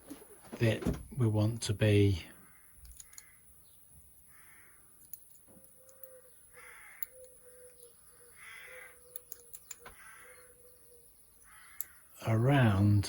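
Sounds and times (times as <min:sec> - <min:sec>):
crow cawing: 0:02.4 - 0:03.6, 0:04.2 - 0:05.0, 0:05.8 - 0:09.1, 0:09.8 - 0:12.2.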